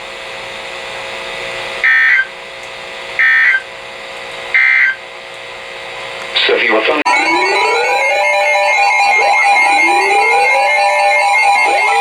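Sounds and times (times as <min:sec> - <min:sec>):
steady hum: 0:00.1 - 0:12.0
warbling digital data tones: 0:07.1 - 0:12.0.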